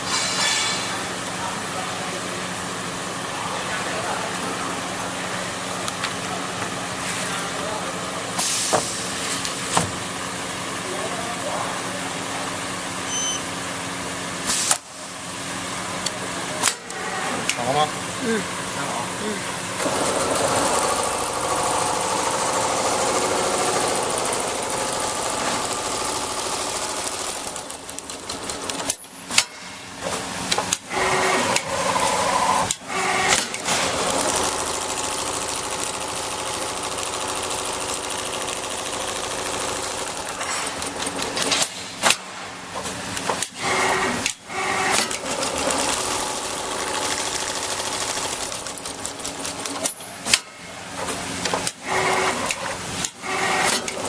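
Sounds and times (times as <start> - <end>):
sewing machine stitching: 19.8 - 29.0, 30.6 - 41.7, 43.4 - 50.4, 51.4 - 54.0.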